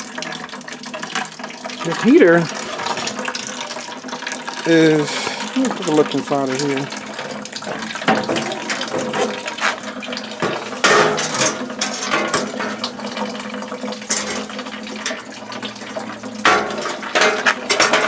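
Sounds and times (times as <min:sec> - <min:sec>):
water running and trickling: 0:00.0 - 0:18.0
metal clanks and rattles: 0:02.6 - 0:03.6, 0:06.6 - 0:18.0.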